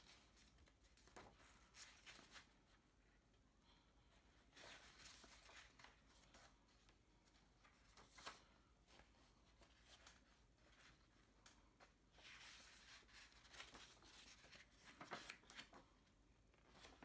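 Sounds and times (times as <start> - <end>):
paper pages rustling: 12.1 - 15.9, 16.6 - 17.0.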